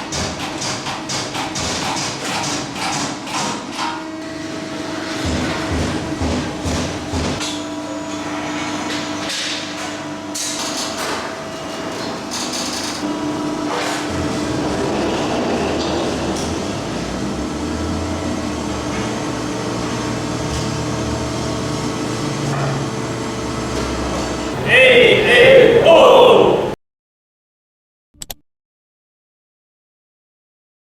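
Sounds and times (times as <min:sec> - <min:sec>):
shop machinery humming: 0:04.1 - 0:26.8.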